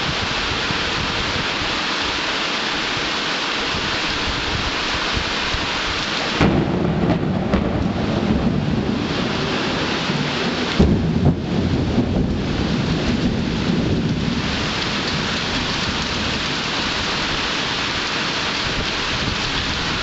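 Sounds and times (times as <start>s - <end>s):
steady rain: 0.0s - 20.0s
thunder rolling: 6.2s - 17.4s.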